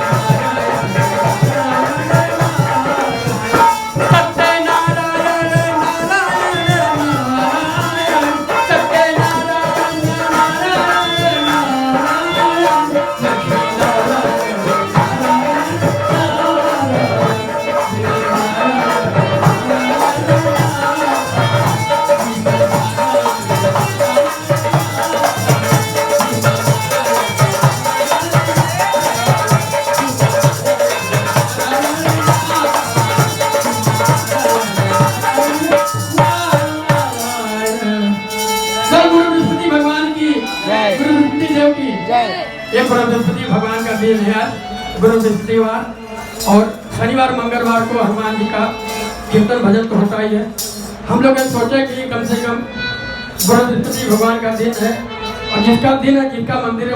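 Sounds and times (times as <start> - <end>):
hand drum beat: 0.0 - 37.5
voices singing a chant: 0.0 - 49.8.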